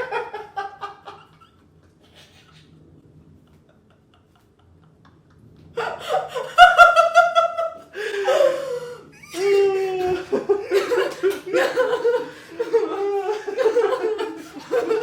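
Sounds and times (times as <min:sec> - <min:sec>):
people laughing: 0:00.0 - 0:15.0
people shrieking: 0:08.1 - 0:11.1, 0:12.5 - 0:14.6.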